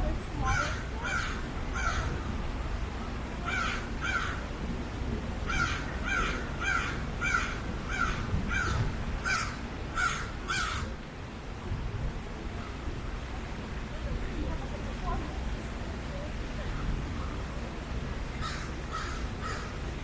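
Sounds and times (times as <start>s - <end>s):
low background rumble: 0.0s - 20.0s
crow cawing: 0.5s - 2.2s, 3.4s - 4.4s, 5.5s - 11.0s, 18.4s - 19.9s.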